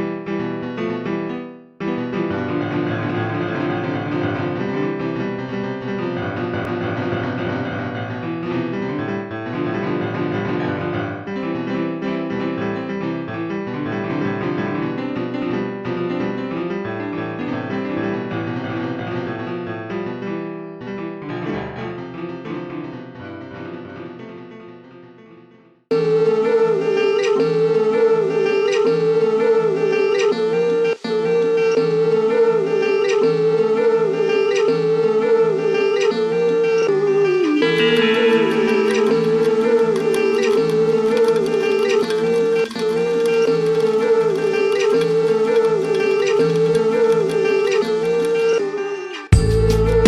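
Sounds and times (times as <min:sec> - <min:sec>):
piano music: 0:37.6 - 0:48.4.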